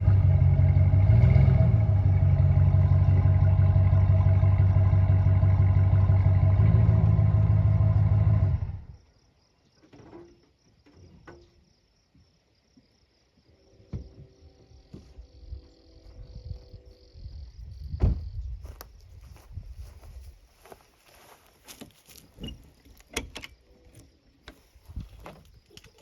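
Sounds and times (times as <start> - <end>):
vehicle engine running: 0.0 - 9.0.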